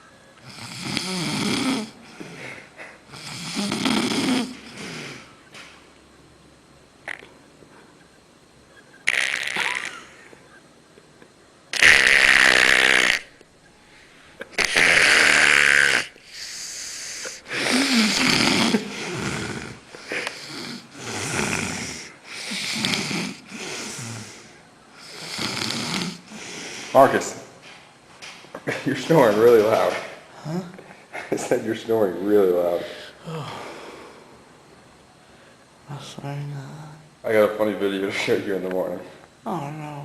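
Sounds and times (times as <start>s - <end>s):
man snoring loudly: 0.5s - 2.0s, 3.1s - 5.0s, 14.6s - 26.4s.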